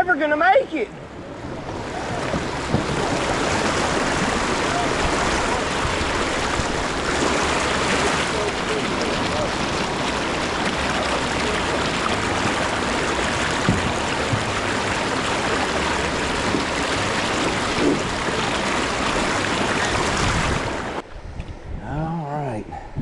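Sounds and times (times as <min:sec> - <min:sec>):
river water rushing over rapid: 0:00.8 - 0:21.0
faint knocks: 0:13.6 - 0:15.0.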